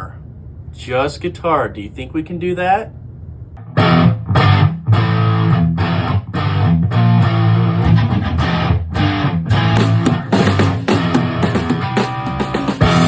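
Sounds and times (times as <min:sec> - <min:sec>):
electric guitar strumming chords: 0:03.6 - 0:13.0.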